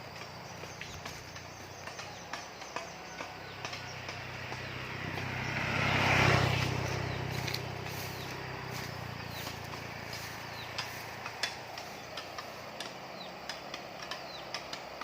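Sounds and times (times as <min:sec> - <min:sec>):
vehicle passing by: 0:00.0 - 0:15.0
light ticks: 0:06.6 - 0:15.0.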